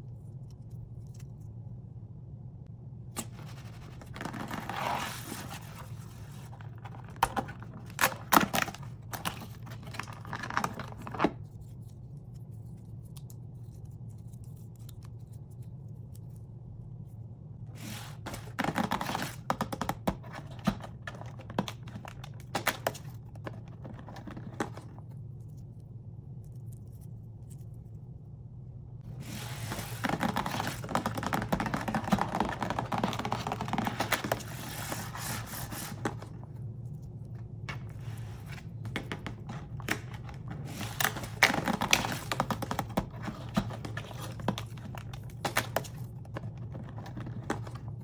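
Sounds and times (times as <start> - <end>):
cardboard and wrapping tearing: 3.4 - 11.1
steady low hum: 20.2 - 48.0.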